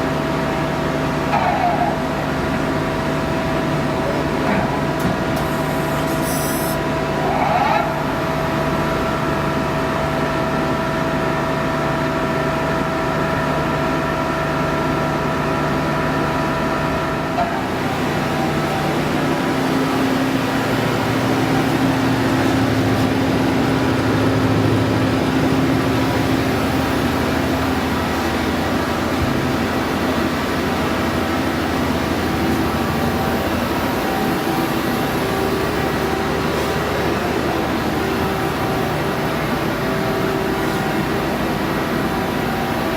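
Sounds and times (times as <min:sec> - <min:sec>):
lathe machine whine: 0:00.0 - 0:42.9.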